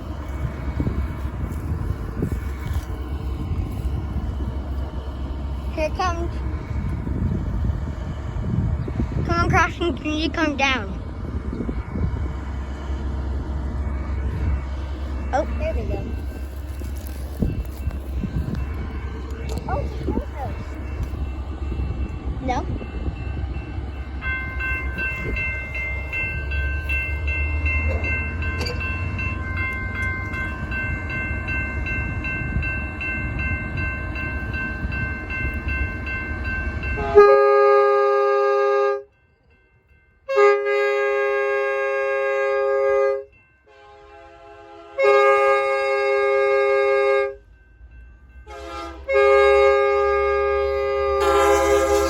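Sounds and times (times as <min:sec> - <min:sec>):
low rumble: 0:00.0 - 0:31.5
railroad crossing bell ringing: 0:00.0 - 0:52.0
loud multi-tone train horn: 0:36.9 - 0:39.1, 0:40.2 - 0:47.5, 0:48.4 - 0:52.0.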